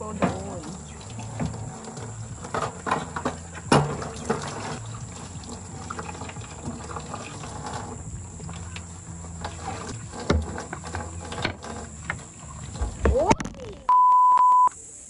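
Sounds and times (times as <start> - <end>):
water pouring and splashing: 0.0 - 13.9
dishes knocking and clinking: 1.4 - 4.8.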